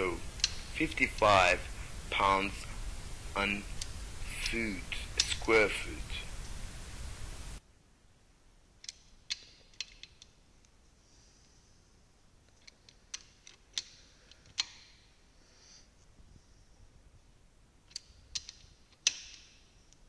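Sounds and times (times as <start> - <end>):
burst of hiss: 0.0 - 7.6.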